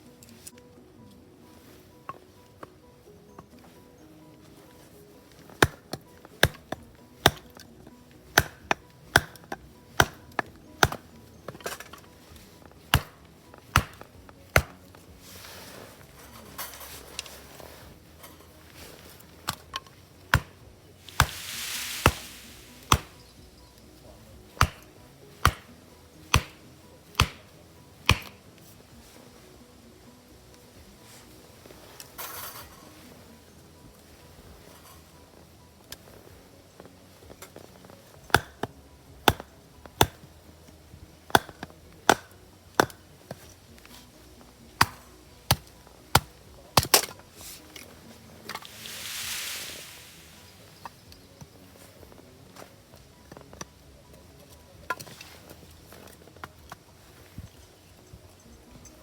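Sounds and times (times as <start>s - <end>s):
axe chopping firewood: 5.3s - 28.6s, 34.8s - 52.0s, 53.3s - 53.8s, 54.5s - 57.5s.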